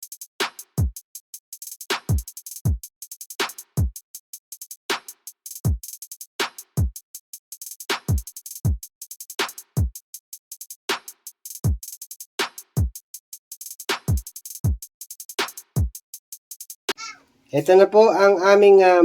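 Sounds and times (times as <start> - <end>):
electronic music with drum-machine beat: 1.6 - 4.0, 10.6 - 16.8.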